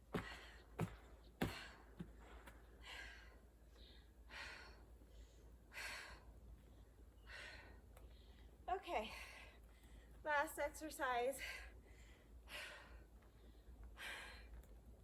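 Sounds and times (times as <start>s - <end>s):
woman breathing heavily: 0.0s - 10.3s, 11.3s - 15.0s.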